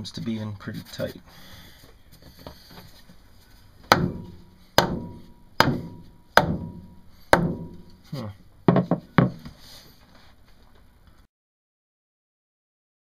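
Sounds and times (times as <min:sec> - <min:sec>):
hammer blows on wood: 0:03.8 - 0:09.5.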